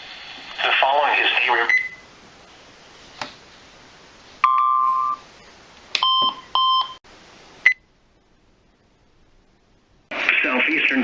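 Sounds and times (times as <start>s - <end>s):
electronic alert beeps: 4.4s - 5.2s.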